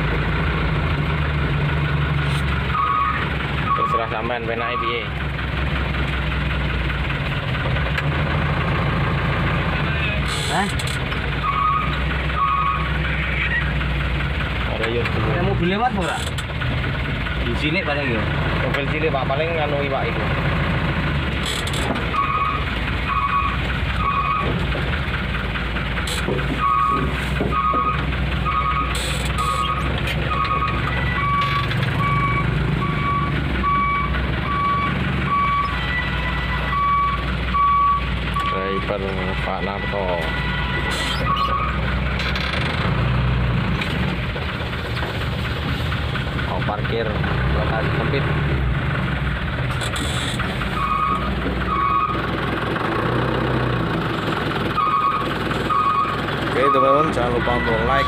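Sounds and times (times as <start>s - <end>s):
truck engine running: 0.0s - 58.0s
truck reversing alarm beeping: 2.5s - 5.1s, 10.2s - 14.0s, 21.5s - 25.1s, 26.1s - 42.2s, 49.9s - 52.4s, 54.6s - 58.0s.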